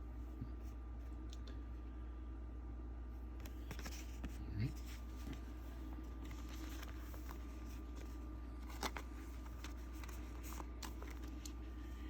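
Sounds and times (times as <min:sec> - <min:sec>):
steady low hum: 0:00.0 - 0:12.0
cards rustling and clicking: 0:03.4 - 0:11.8.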